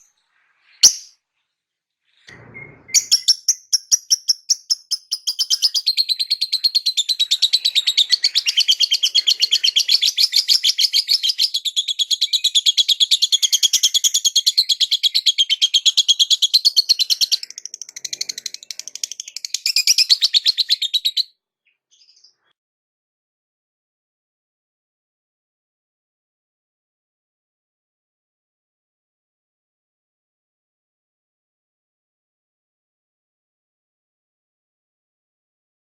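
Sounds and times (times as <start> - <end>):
lovebird chattering trill: 0.8 - 1.1, 3.0 - 21.2.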